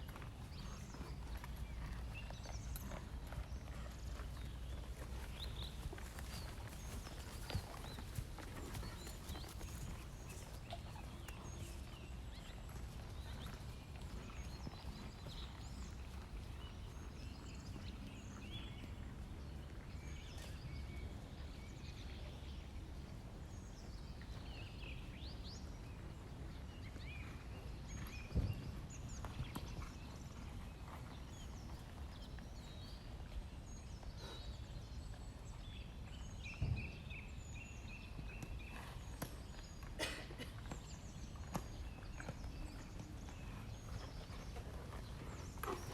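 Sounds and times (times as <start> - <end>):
horse hooves on arena surface: 0.0 - 45.9.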